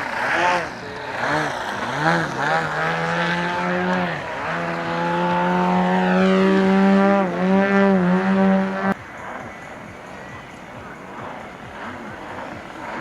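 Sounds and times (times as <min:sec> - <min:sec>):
model airplane engine revving: 0:00.0 - 0:09.0.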